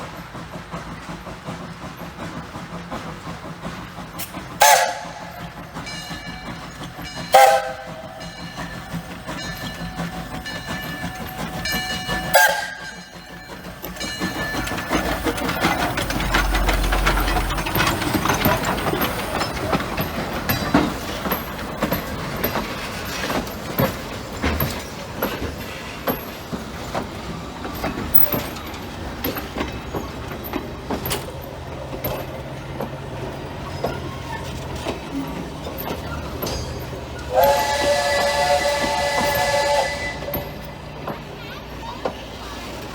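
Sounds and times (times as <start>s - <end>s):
train passing rush: 0.0s - 42.9s
train wheel clicks: 0.0s - 42.9s
steam locomotive whistle: 4.6s - 5.6s, 7.3s - 8.3s, 11.0s - 13.0s, 37.2s - 40.8s.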